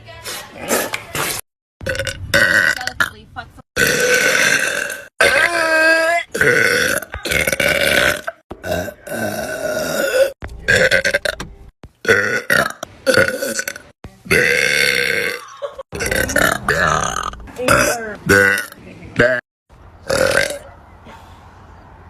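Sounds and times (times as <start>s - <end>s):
girls burping: 3.8s - 11.2s, 12.1s - 19.4s.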